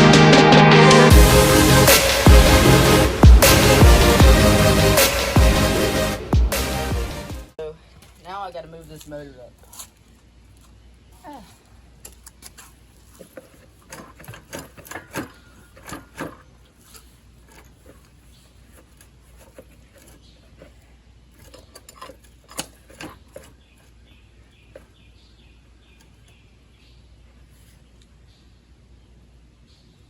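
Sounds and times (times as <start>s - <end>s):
metal tools clicking and knocking: 12.0s - 24.0s.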